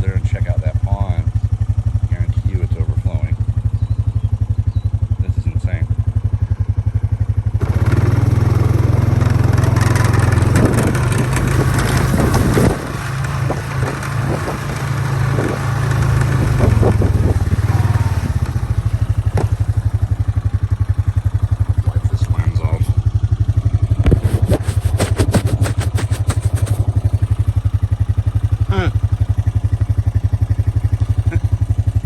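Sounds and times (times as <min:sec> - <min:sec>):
small vehicle engine: 0:00.0 - 0:32.0
rattling over rough ground: 0:07.6 - 0:32.0.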